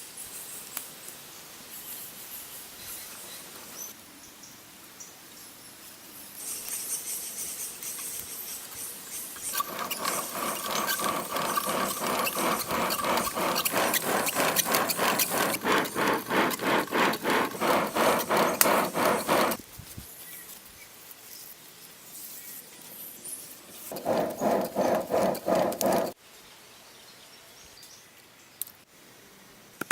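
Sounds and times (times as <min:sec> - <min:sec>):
hand scraping strokes on stone: 0:09.4 - 0:19.6, 0:23.8 - 0:26.2.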